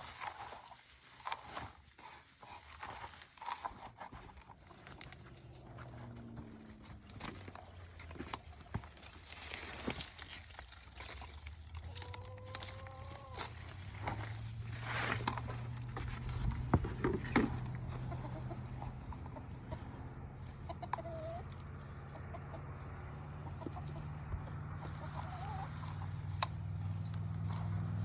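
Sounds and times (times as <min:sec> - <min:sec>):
chickens clucking: 0:01.2 - 0:28.0.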